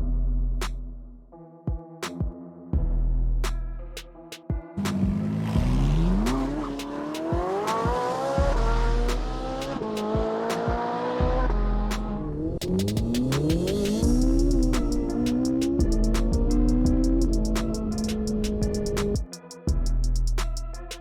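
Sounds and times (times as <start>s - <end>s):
electronic music with heavy beat: 1.6s - 21.0s
racing car engine revving: 4.8s - 19.2s.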